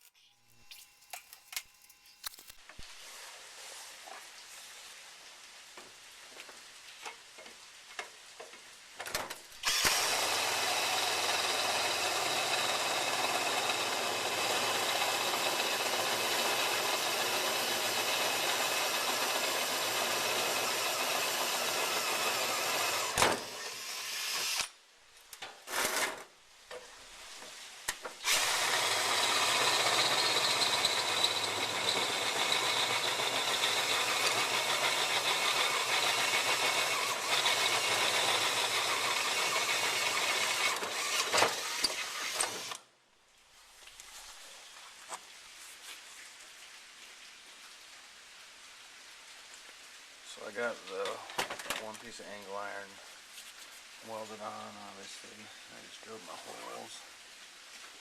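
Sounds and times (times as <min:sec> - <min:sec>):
welder arc crackling: 0:00.0 - 0:02.9.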